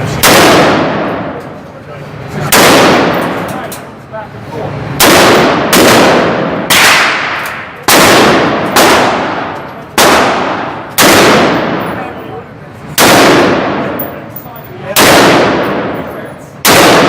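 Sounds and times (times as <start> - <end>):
rifle shots with echo: 0.2 - 1.4, 2.5 - 3.5, 5.0 - 12.2, 13.0 - 14.2, 14.9 - 17.0.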